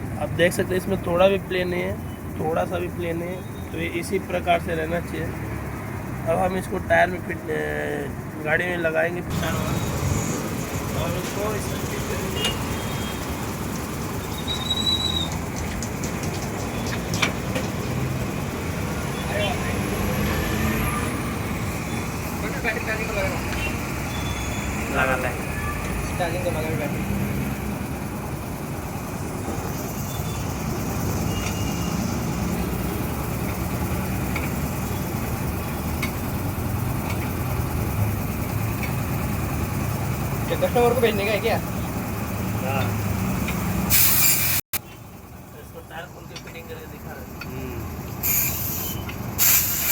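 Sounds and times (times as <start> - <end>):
engine idling: 0.0 - 43.6, 44.8 - 49.9
low rumble of road traffic: 0.0 - 49.9.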